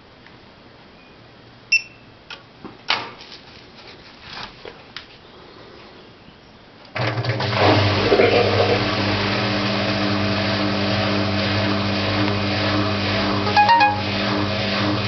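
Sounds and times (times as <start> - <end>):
washing machine motor hum: 7.0 - 15.0.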